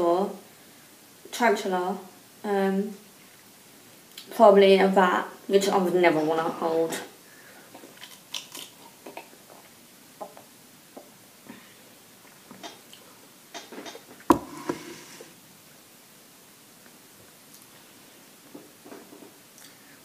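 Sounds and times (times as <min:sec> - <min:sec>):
sharp knock: 0:14.3 - 0:15.0.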